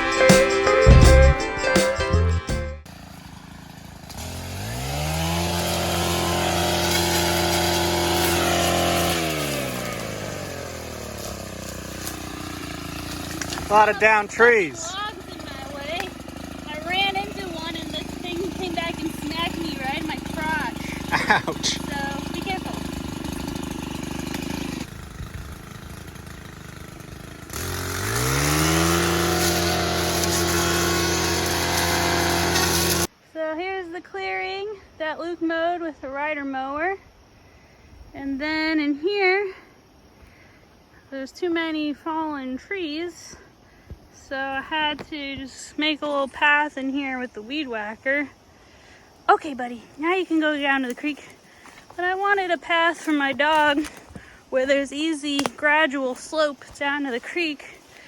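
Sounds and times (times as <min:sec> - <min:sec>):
string trimmer engine revving: 0:02.8 - 0:33.1, 0:49.3 - 0:58.0.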